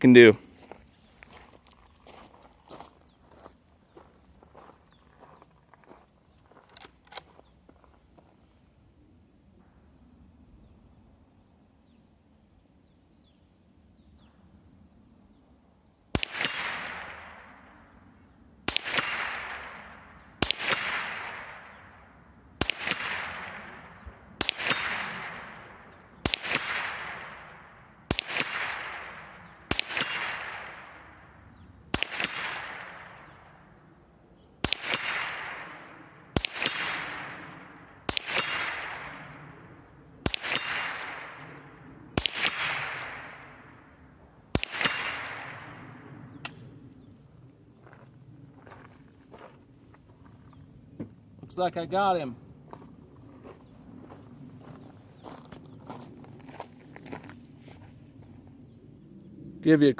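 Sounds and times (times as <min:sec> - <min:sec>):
rifle shots: 0:16.1 - 0:17.9, 0:18.6 - 0:33.7, 0:34.6 - 0:46.6.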